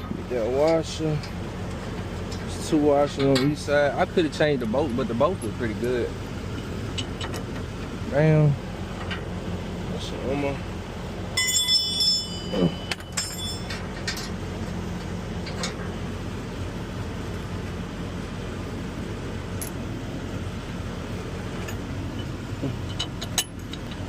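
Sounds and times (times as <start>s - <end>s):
low mechanical hum: 0.0s - 24.0s.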